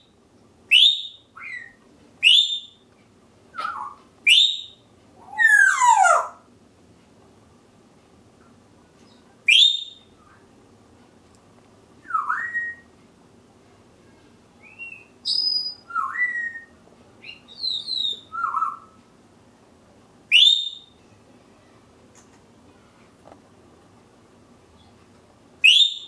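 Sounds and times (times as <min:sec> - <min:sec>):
parrot whistling: 0:00.7 - 0:02.8, 0:03.5 - 0:06.4, 0:09.5 - 0:10.0, 0:12.0 - 0:12.9, 0:14.6 - 0:18.9, 0:20.3 - 0:20.9, 0:25.6 - 0:26.0
piercing upward parrot whistle: 0:00.7 - 0:02.8, 0:03.6 - 0:06.2, 0:09.5 - 0:10.0, 0:12.1 - 0:12.9, 0:14.6 - 0:18.9, 0:20.3 - 0:20.9, 0:25.6 - 0:26.0.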